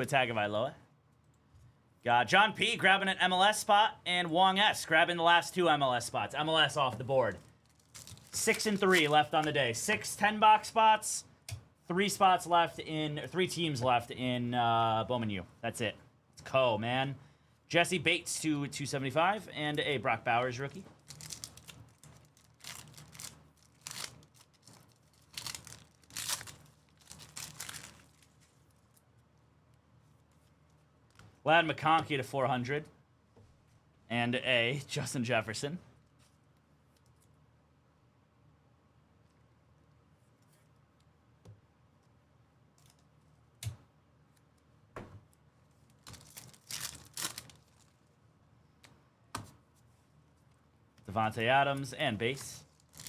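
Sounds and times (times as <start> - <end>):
plastic wrappers crinkling: 7.3 - 9.6, 21.0 - 29.0, 45.8 - 48.1, 52.3 - 53.0.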